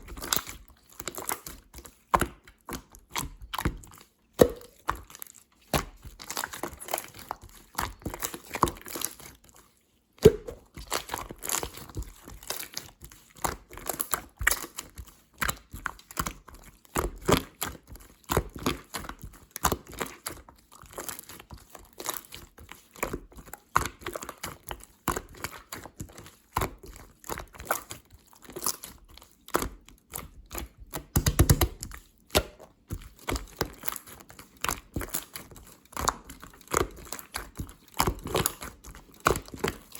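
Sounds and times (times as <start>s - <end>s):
slime clicking and crackling: 10.2s - 39.9s.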